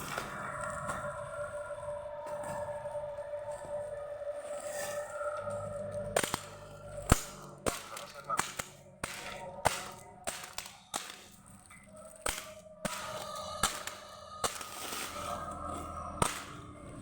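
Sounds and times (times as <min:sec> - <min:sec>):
plastic packaging clicks and snaps: 0:06.0 - 0:16.8.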